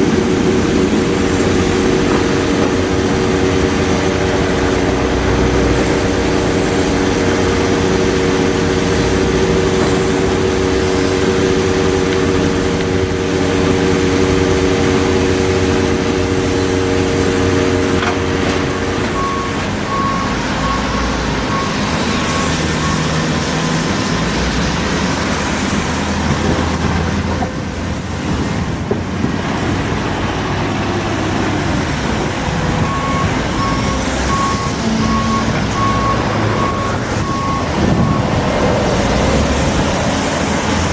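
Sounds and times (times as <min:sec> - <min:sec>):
diesel engine running: 0:00.0 - 0:40.9
travel alarm beeping: 0:18.6 - 0:23.4, 0:32.8 - 0:38.4.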